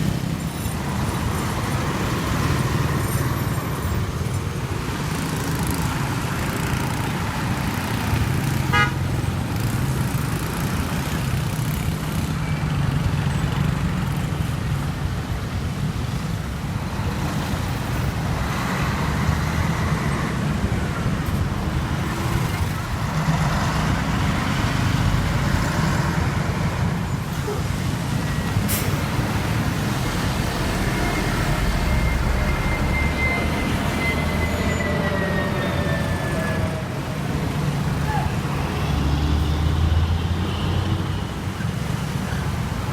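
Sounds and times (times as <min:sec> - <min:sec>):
street traffic: 0:00.0 - 0:42.9
truck engines rumbling: 0:00.0 - 0:42.9
high-pitched tone: 0:30.6 - 0:37.0.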